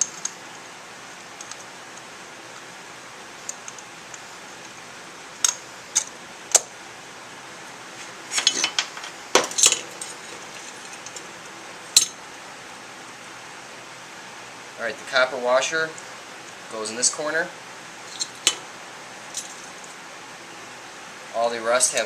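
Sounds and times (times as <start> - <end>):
small metal parts clinking: 8.3 - 11.3, 18.1 - 18.6, 19.3 - 19.9.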